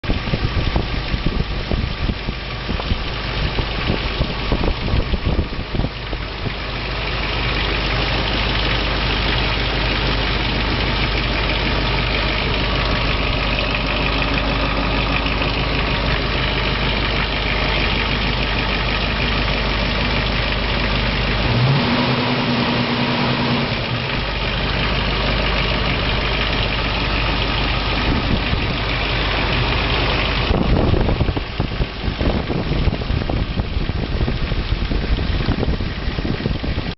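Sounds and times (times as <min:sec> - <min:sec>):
car engine idling: 0:00.0 - 0:36.9.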